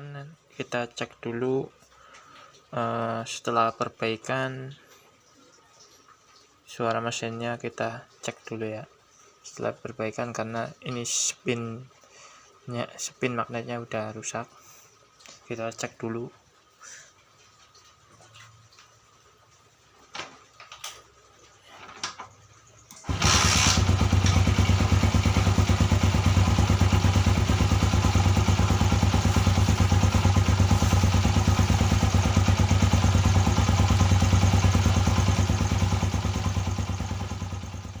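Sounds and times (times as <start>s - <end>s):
motorcycle engine idling: 23.0s - 38.0s.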